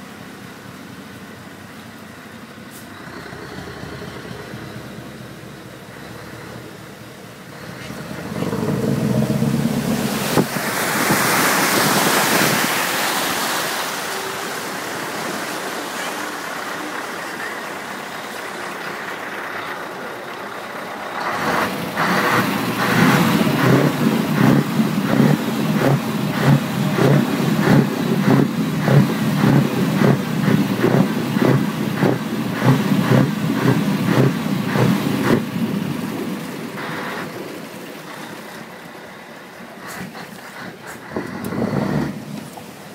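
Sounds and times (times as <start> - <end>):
rush of water spray: 0.0 - 42.9
car exhaust pulsing: 3.2 - 10.6, 19.6 - 37.2.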